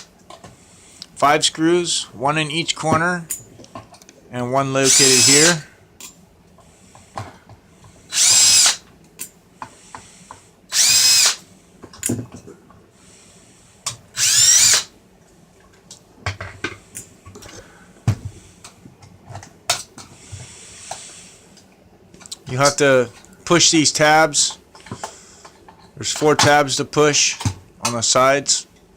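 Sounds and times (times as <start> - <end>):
power screwdriver motor whining: 4.8 - 5.6, 8.1 - 8.8, 10.7 - 11.4, 14.2 - 14.9.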